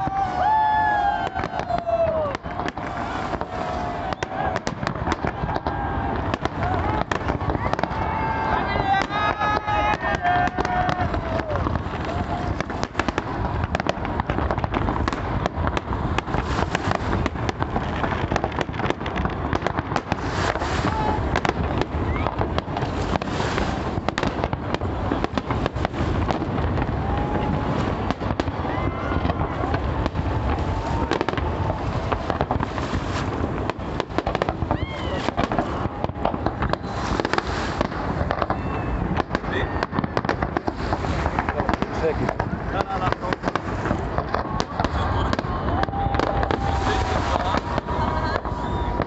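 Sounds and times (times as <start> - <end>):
firework pops and cracks: 0.0 - 49.0.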